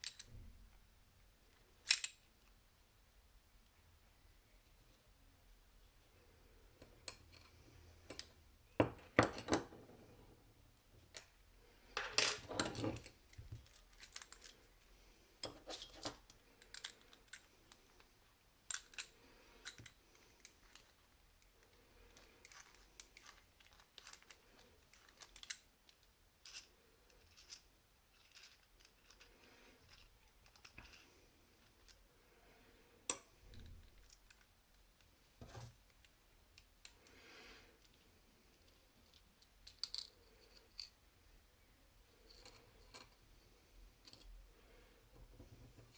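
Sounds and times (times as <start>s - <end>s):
small metal parts clicking: 12.0s - 14.6s, 15.7s - 17.8s, 18.7s - 32.0s.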